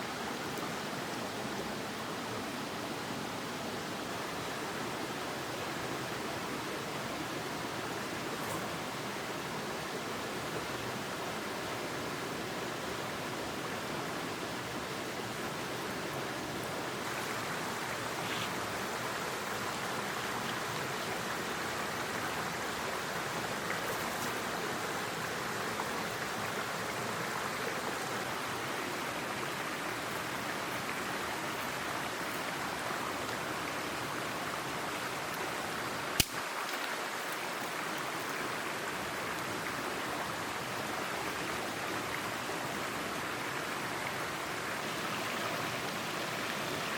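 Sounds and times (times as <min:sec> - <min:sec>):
stream flowing over rocks: 0:00.0 - 0:46.9
sharp click: 0:36.2 - 0:36.4.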